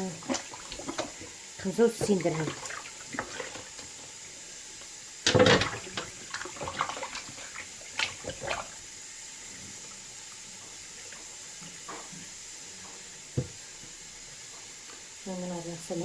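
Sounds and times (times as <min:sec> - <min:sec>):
water splashing: 0:00.0 - 0:04.4, 0:05.2 - 0:10.0
tap water running into sink: 0:00.0 - 0:15.2
knocks in sink: 0:05.3 - 0:06.2, 0:13.4 - 0:13.6.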